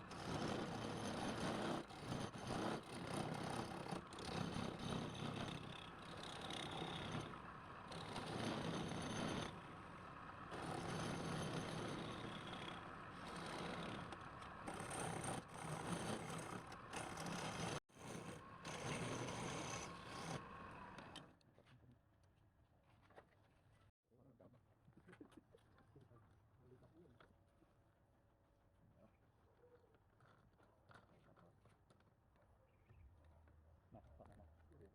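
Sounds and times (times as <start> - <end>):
scraping and rubbing: 13.3 - 21.2.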